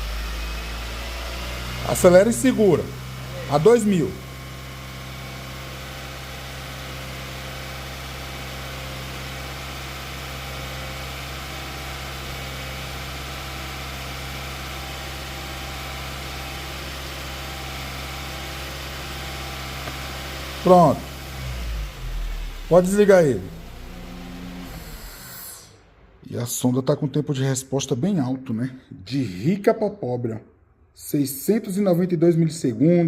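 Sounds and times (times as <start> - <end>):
car engine running steadily: 0.0 - 26.2.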